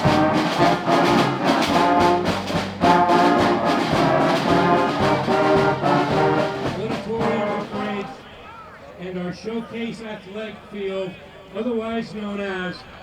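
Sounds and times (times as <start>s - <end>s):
steady drum beat: 0.0s - 8.2s
brass instruments playing chords: 0.0s - 8.4s.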